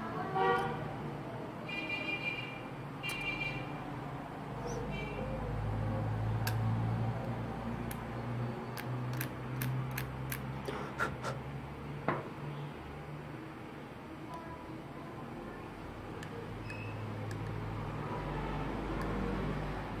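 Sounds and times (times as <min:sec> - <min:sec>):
small tools clicking and tapping: 0:06.4 - 0:08.1, 0:08.7 - 0:10.7, 0:16.1 - 0:17.6, 0:18.9 - 0:19.2.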